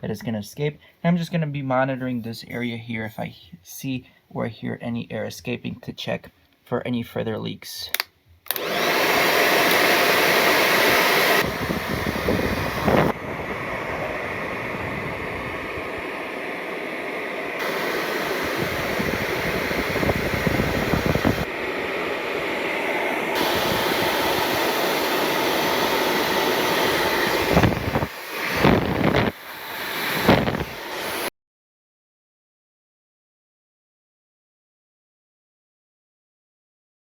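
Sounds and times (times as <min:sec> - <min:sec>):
hair dryer blowing air: 0:08.5 - 0:31.3.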